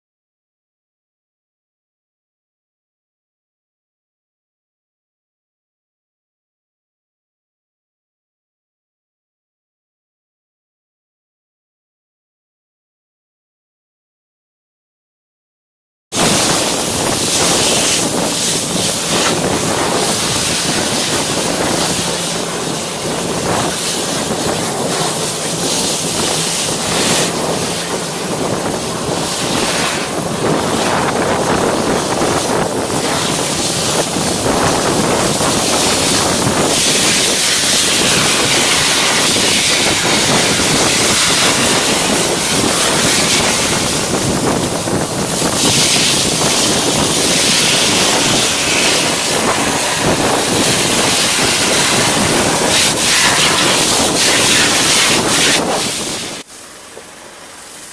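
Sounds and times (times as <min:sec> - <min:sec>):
vacuum suction rushing: 0:16.2 - 0:56.5
high-pressure water jet hissing: 0:16.2 - 0:56.9.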